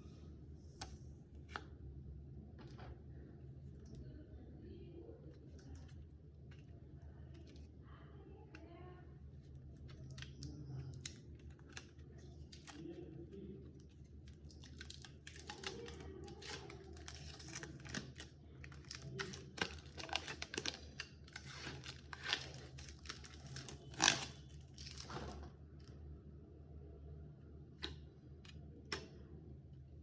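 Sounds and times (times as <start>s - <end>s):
packaging rustling and crinkling: 13.9s - 25.5s.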